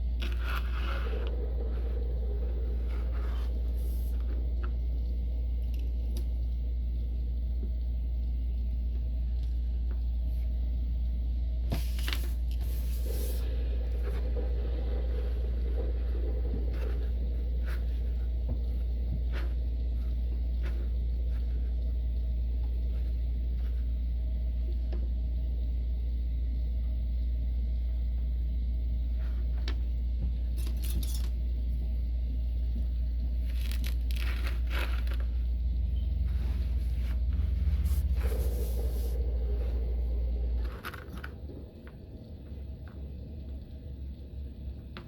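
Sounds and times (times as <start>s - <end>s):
steady low hum: 0.0s - 45.0s
sand scraping and squishing: 0.2s - 4.5s, 36.0s - 41.4s.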